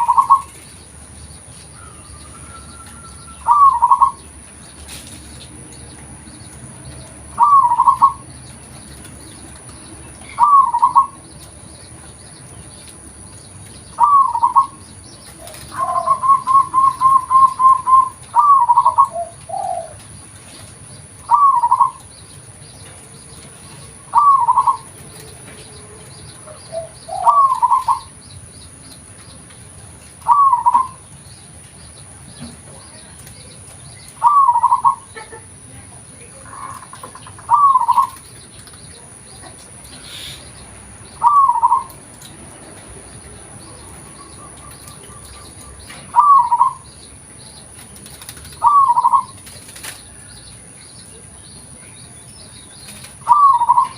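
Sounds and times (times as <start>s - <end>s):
dove cooing: 0.0s - 0.6s, 1.8s - 4.3s, 7.3s - 8.3s, 10.2s - 11.2s, 13.9s - 20.1s, 21.2s - 22.0s, 23.9s - 25.7s, 26.4s - 28.1s, 30.2s - 31.0s, 34.2s - 35.4s, 36.4s - 38.2s, 41.2s - 42.0s, 43.7s - 46.9s, 48.5s - 49.6s, 53.2s - 53.9s.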